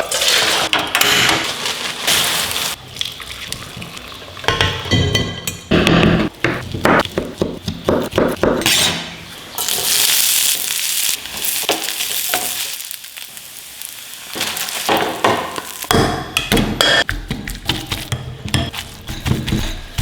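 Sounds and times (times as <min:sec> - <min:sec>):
food sizzling in a pan: 0:00.0 - 0:04.5, 0:08.4 - 0:16.4
cooking utensils knocking and clinking: 0:00.7 - 0:01.6, 0:04.4 - 0:08.6, 0:14.9 - 0:20.0.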